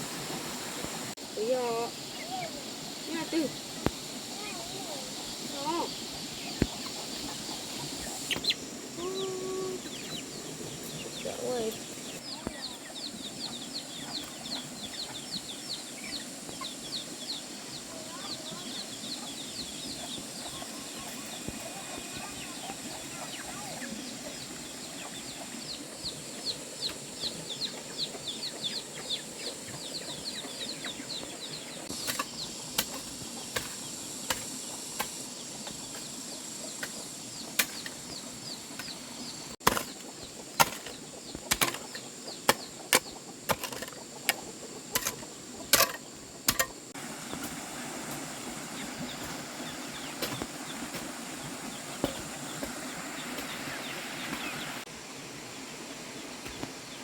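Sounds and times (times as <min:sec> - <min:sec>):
faint high hiss: 0:00.0 - 0:39.6
small bird chirping: 0:01.4 - 0:47.4.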